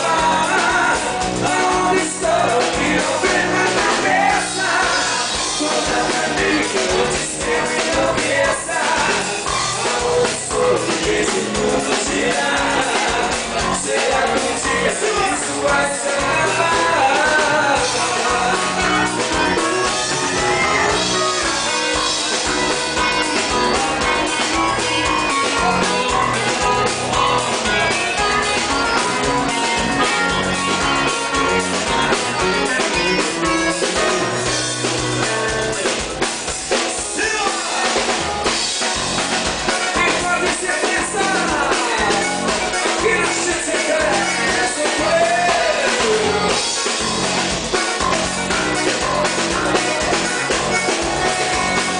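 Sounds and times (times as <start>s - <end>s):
person singing: 0.0s - 36.3s, 39.7s - 47.0s
live band music: 0.0s - 51.9s.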